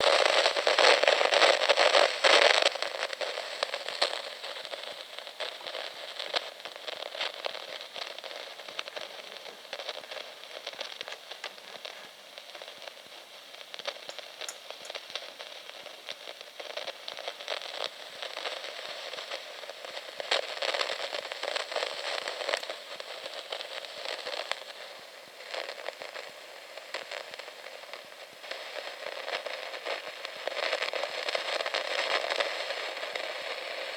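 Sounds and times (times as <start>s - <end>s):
dense crackling clicks: 0.0s - 24.8s.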